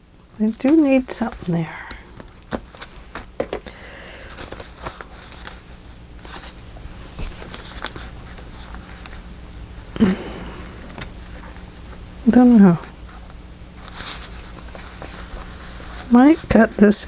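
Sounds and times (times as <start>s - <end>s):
paper rustling and shuffling: 0.2s - 17.0s.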